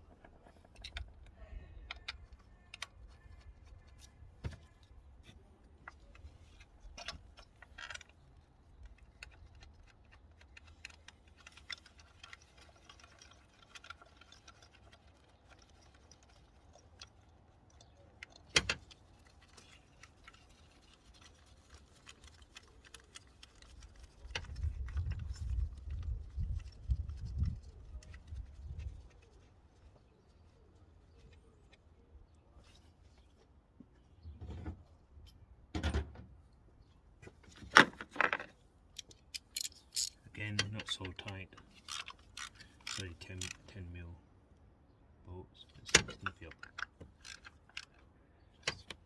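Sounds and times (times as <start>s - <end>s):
metallic clicks of hand tools: 39.0s - 40.8s.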